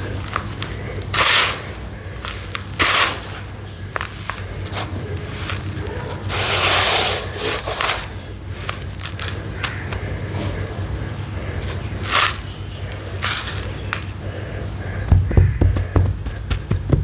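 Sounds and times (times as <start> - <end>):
sharp ticks of falling bits: 0.0 - 6.2, 7.6 - 14.3
steady low hum: 0.0 - 17.0.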